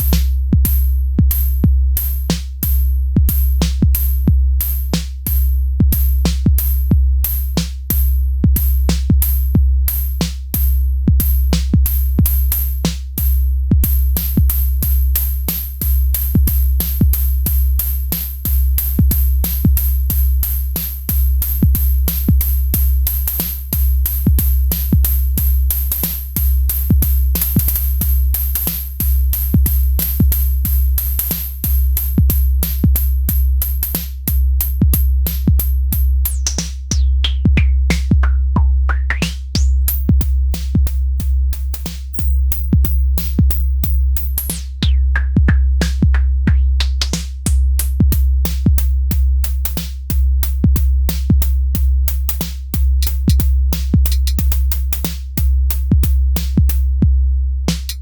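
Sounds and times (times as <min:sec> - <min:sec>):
crisp hi-hat ticks: 0:00.0 - 0:38.2, 0:38.9 - 0:45.0, 0:46.8 - 0:57.0, 0:57.7 - 0:58.0
deep booming kick drum: 0:00.0 - 0:58.0.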